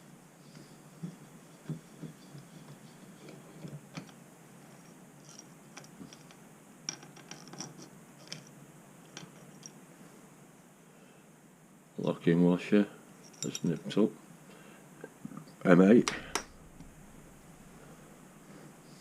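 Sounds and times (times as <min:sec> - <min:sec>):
metal tools clicking and tapping: 0:13.2 - 0:14.0, 0:16.1 - 0:16.9.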